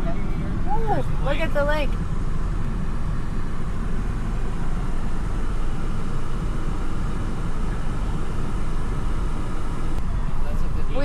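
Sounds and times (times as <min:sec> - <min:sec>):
car road and engine noise: 0:00.0 - 0:11.0.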